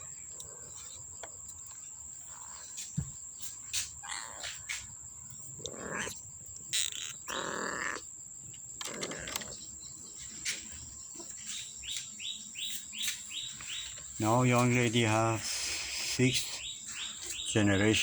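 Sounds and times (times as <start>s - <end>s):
kittens mewing: 4.0s - 4.8s, 5.5s - 8.1s, 8.8s - 9.6s.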